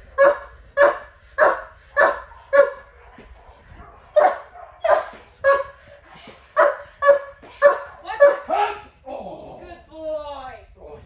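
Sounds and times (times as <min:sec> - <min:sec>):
dog barking sharply: 0:04.2 - 0:05.7.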